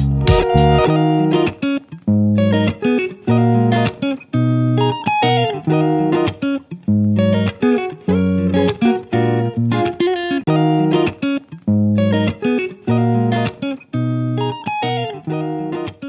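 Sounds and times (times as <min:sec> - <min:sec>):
guitar playing plucked chords: 0:00.0 - 0:16.0.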